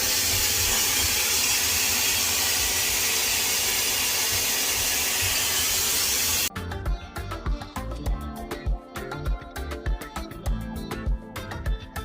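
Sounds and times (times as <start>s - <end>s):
hair dryer blowing air: 0.0s - 6.5s.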